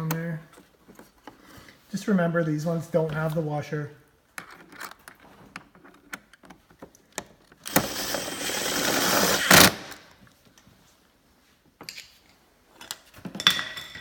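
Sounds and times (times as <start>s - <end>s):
power driver driving screw: 7.6s - 10.1s.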